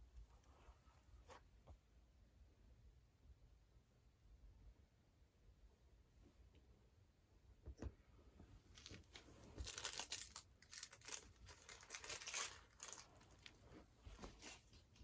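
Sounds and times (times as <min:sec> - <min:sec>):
faint crinkling and rustling: 0:08.3 - 0:15.0.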